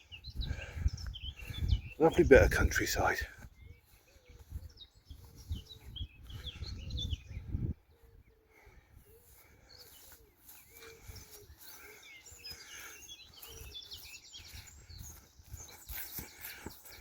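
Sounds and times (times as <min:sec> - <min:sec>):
birds chirping and calling: 0:00.0 - 0:17.0.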